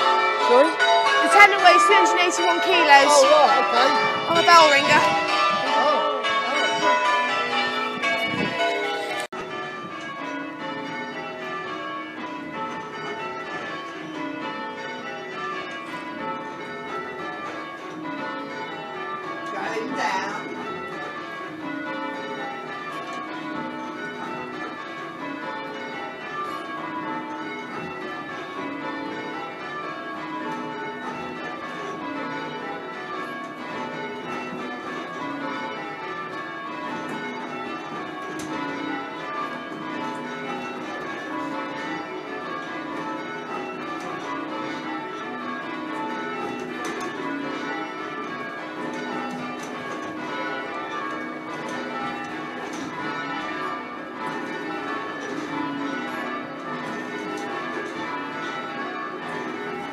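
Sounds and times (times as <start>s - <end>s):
church bells ringing: 0.0s - 59.9s.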